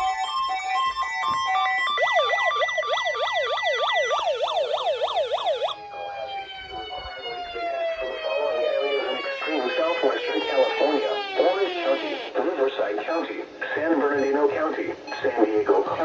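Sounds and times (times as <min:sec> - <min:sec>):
warning siren wailing: 0:00.0 - 0:12.3.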